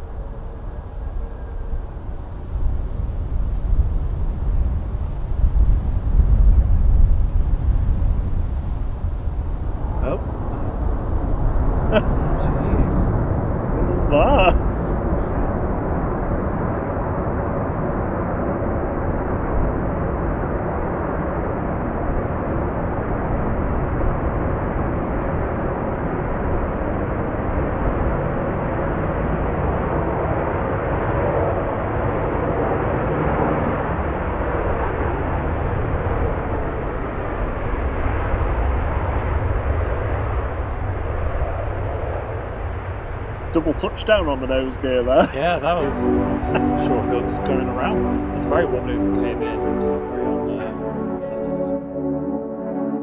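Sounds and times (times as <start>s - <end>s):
faint engine whine: 0.0s - 28.6s, 39.3s - 52.1s
jet engines roaring: 7.1s - 29.3s, 40.1s - 51.4s.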